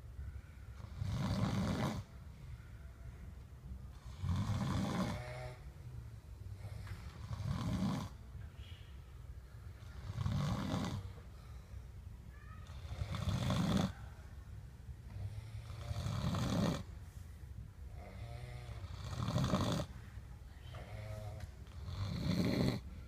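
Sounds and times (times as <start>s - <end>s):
rasping snores: 0.8s - 2.1s, 3.9s - 5.7s, 6.6s - 8.2s, 10.0s - 11.1s, 12.7s - 14.0s, 15.1s - 16.9s, 18.0s - 19.9s, 20.8s - 22.8s
soft pitched breath: 11.0s - 12.2s.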